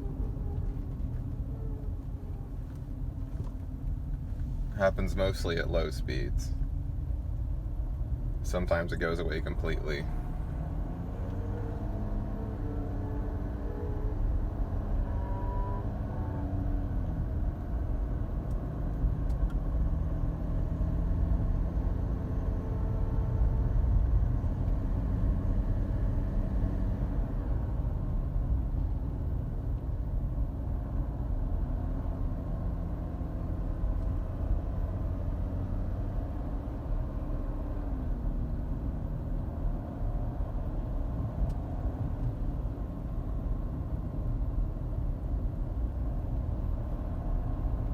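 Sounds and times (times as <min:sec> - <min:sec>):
faint whining tones: 0:00.0 - 0:06.0
road and engine rumble: 0:00.0 - 0:47.9.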